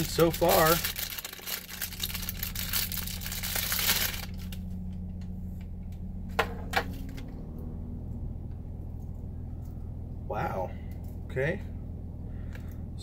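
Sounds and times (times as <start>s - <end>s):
plastic packaging crinkling: 0.0s - 4.6s.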